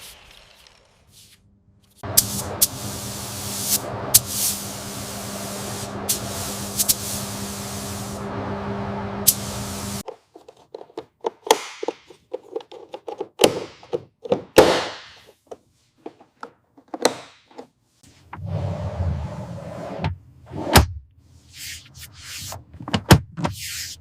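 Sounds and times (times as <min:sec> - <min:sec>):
spraying hiss: 0:02.0 - 0:08.2, 0:09.2 - 0:10.0
low hum: 0:02.2 - 0:10.0.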